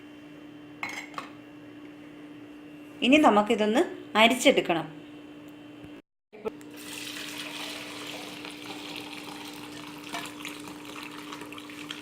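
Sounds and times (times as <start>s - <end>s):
liquid pouring through strainer: 6.8s - 12.0s.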